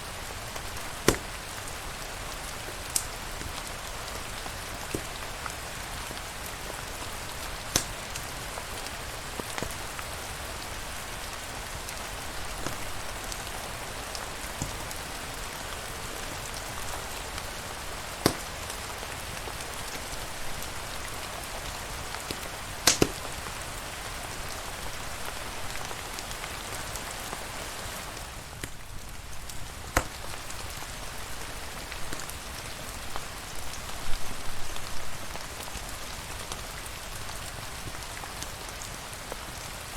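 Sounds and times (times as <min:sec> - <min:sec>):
steady rain falling: 0:00.0 - 0:39.9
sharp pops: 0:01.0 - 0:01.4, 0:04.9 - 0:05.2, 0:07.6 - 0:08.3, 0:18.2 - 0:18.8, 0:22.3 - 0:23.2.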